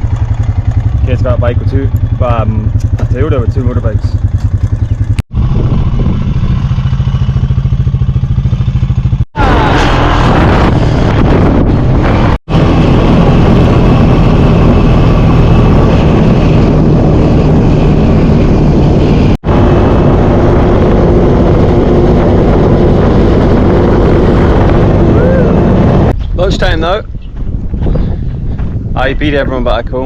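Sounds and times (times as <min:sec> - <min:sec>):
quad bike engine running: 0:00.0 - 0:26.2.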